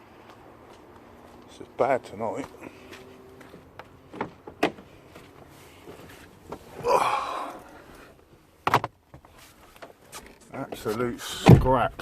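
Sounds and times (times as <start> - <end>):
person breathing out loudly: 6.8 - 8.1.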